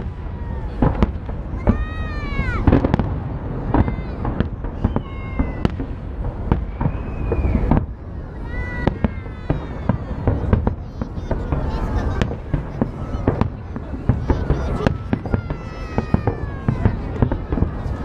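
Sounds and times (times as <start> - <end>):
fireworks bangs and cracks: 0.0 - 18.0.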